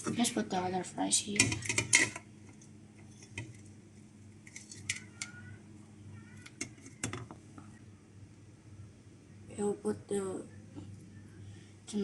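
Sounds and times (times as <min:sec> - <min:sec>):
utensil clinking against plate: 0:01.4 - 0:02.2.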